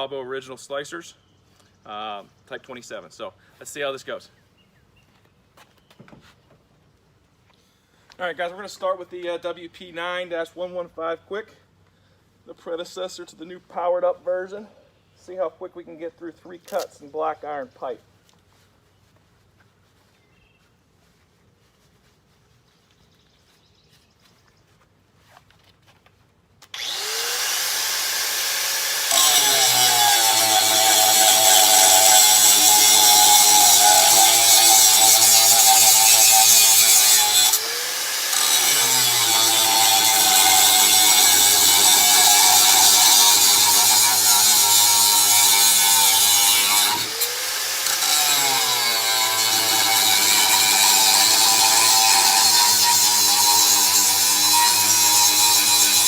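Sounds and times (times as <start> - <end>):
angle grinder motor whine: 26.7 - 34.4
angle grinder cutting metal pipe: 26.7 - 56.0.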